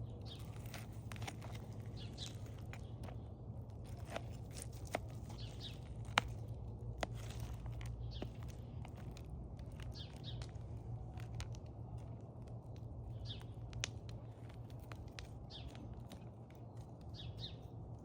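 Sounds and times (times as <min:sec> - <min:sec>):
bird chirping: 0:00.0 - 0:03.3, 0:03.9 - 0:06.2, 0:07.2 - 0:10.6, 0:13.1 - 0:13.6, 0:15.5 - 0:17.7
low steady hum: 0:00.0 - 0:18.0.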